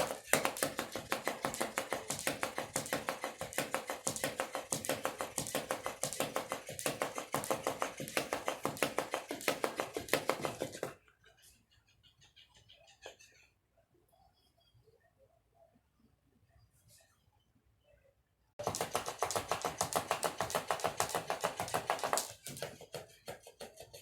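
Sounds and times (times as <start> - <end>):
toy motor humming: 0.0 - 11.0
toy fish flapping and tapping: 0.0 - 11.1, 18.6 - 24.0.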